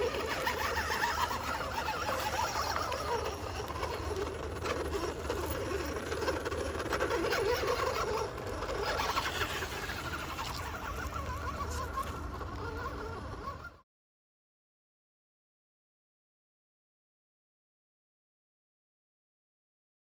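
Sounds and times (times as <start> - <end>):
toy truck electric motor whining: 0.0 - 13.8.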